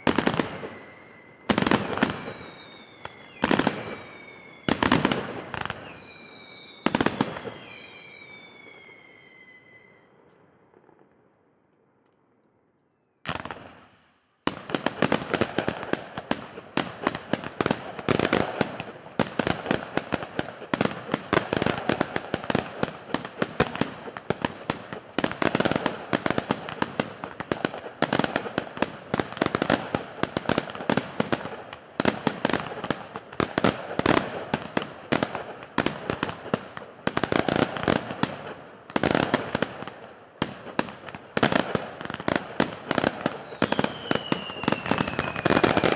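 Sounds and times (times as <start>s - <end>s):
fireworks bangs and crackles: 0.0s - 11.8s, 13.2s - 45.9s.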